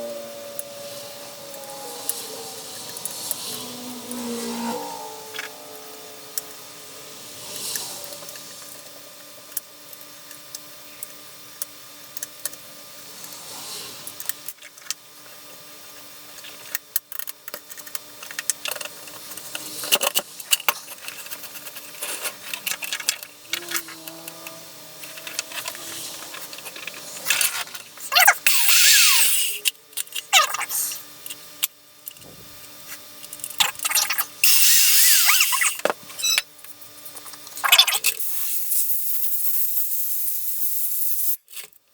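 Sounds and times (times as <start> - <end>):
short bursts of noise: 33.6 - 36.4.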